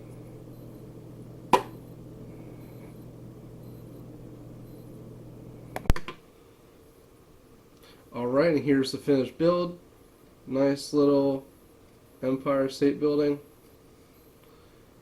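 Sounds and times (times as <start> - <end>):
low hum: 0.0 - 6.0.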